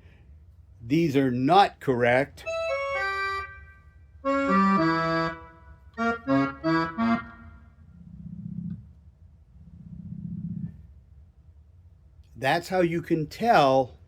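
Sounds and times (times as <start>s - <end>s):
digital accordion notes: 2.4s - 7.7s
low rough growls: 7.9s - 11.0s.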